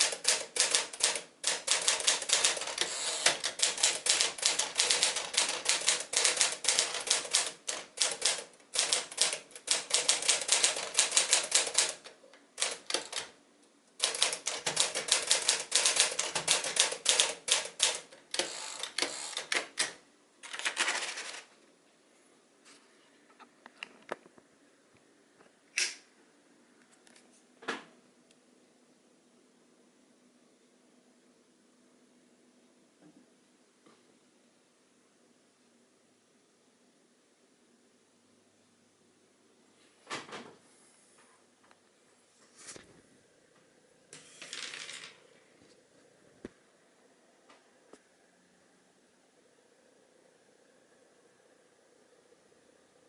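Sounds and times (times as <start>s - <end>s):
typewriter key strikes: 0.0s - 12.0s
typewriter clicks and knocks: 0.0s - 13.3s, 14.0s - 21.5s
typewriter rasping: 0.0s - 13.3s, 14.0s - 21.5s.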